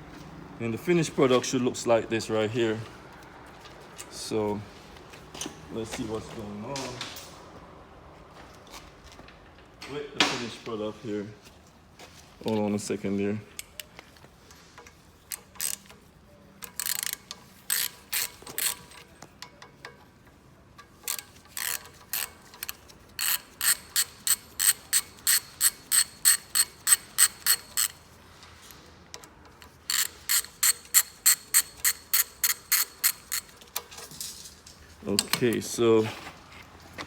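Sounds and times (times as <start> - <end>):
hand ratchet clicking: 14.8 - 20.0, 20.8 - 28.0, 29.2 - 34.0.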